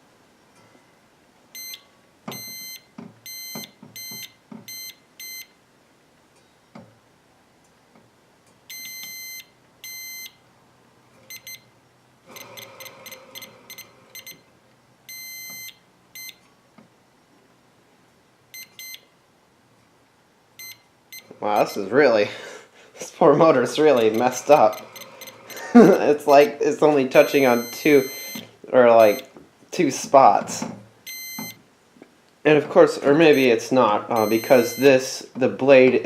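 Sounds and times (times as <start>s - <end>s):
multimeter beeps: 1.5s - 5.6s, 8.7s - 10.4s, 11.3s - 11.7s, 12.3s - 14.5s, 15.1s - 16.4s, 18.5s - 19.1s, 20.6s - 21.9s, 23.8s - 26.6s, 27.2s - 29.3s, 31.0s - 31.6s, 33.3s - 35.0s.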